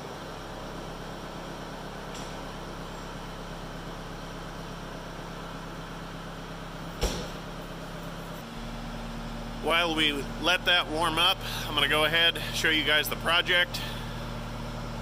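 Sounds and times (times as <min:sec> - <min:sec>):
diesel engine idling: 0:00.0 - 0:15.0
sharp knock: 0:07.0 - 0:07.4.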